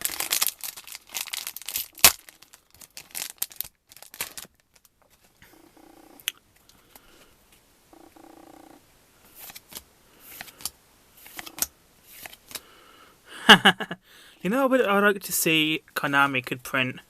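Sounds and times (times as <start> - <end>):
foil wrapper tearing and crinkling: 0.0 - 4.9
faint low hum: 4.6 - 17.0.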